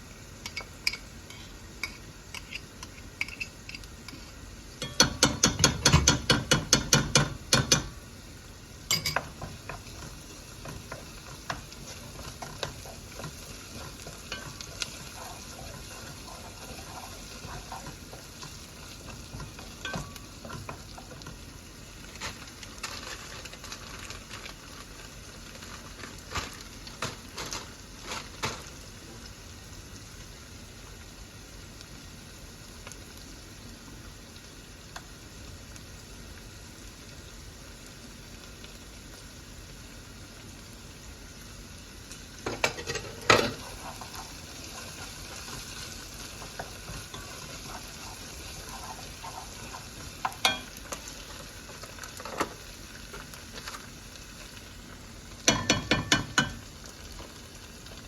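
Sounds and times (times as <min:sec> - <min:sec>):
food sizzling in a pan: 0:00.0 - 0:58.0
utensil clicking against pan: 0:01.8 - 0:04.2, 0:04.8 - 0:07.9.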